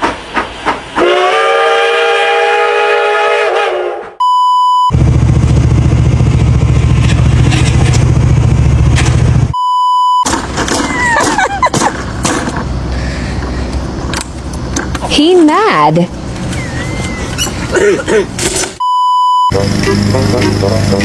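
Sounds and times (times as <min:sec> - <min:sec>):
horn-like blare of tones: 0:01.0 - 0:04.2
censor bleep: 0:04.2 - 0:05.0, 0:09.6 - 0:10.3, 0:18.8 - 0:19.6
lawnmower engine running rough: 0:04.9 - 0:09.5, 0:10.3 - 0:15.1, 0:19.5 - 0:21.0.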